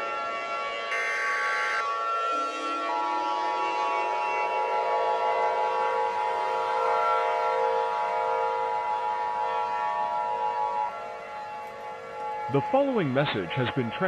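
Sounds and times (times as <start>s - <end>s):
rising warning siren: 0.0s - 14.0s
two-tone alert signal: 0.9s - 1.8s.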